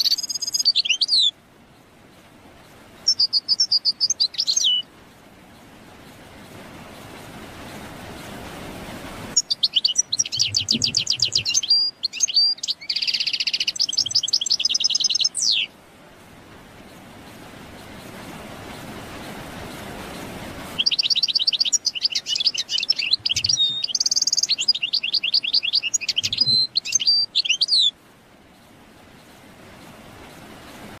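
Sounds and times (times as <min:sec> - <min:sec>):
bird twittering song: 0:00.0 - 0:04.9, 0:09.4 - 0:15.7, 0:16.9 - 0:29.9
steady hiss: 0:01.4 - 0:24.8, 0:27.9 - 0:31.0.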